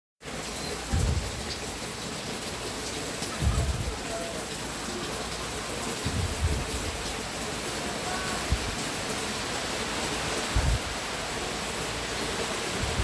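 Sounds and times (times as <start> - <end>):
heavy rain: 0.2 - 13.0
low rumbles: 0.9 - 1.8, 3.4 - 4.1, 6.0 - 7.4.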